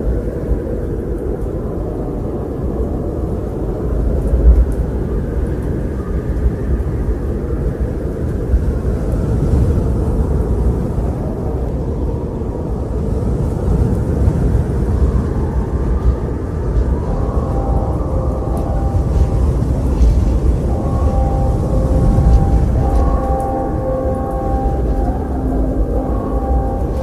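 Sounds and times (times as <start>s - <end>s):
wind gusting in low rumbles: 0.0s - 27.0s
faint higher tones: 16.7s - 27.0s.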